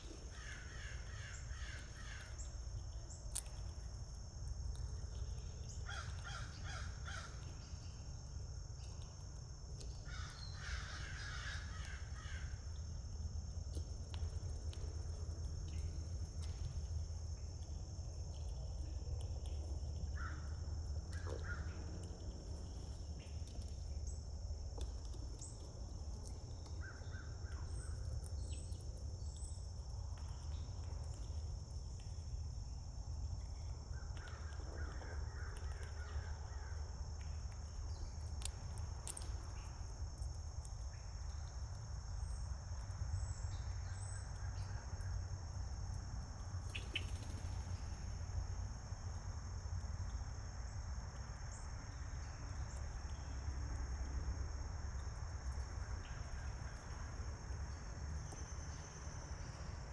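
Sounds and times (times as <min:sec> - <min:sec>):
crows cawing: 0:10.1 - 0:12.6
steady high-pitched hiss: 0:22.3 - 0:59.9.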